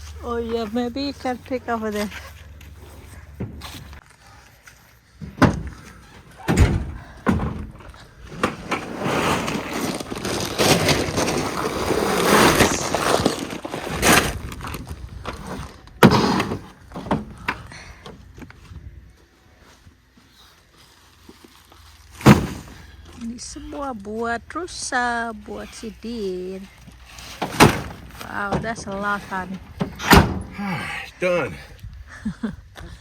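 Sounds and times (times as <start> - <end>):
rustling: 0.0 - 17.4
apples thumping into buckets: 5.2 - 18.7, 21.9 - 24.0, 26.6 - 31.0.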